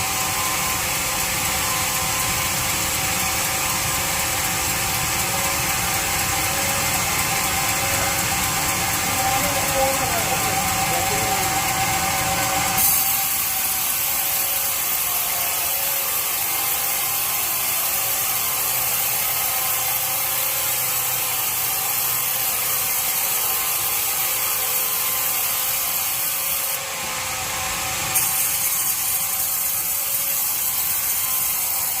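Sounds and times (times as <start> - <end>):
bandsaw whirring: 0.0 - 32.0.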